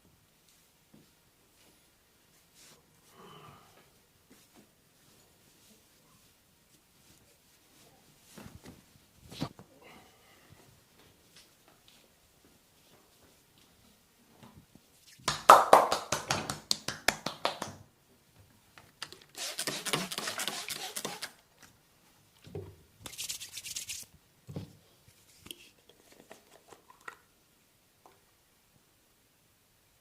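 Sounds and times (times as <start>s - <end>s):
scratchy rubbing on skin: 19.4s - 21.4s, 23.1s - 24.1s.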